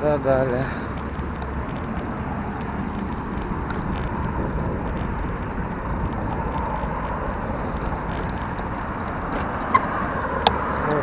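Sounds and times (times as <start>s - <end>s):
road noise: 0.0s - 11.0s
wind rumbling on microphone: 0.0s - 11.0s.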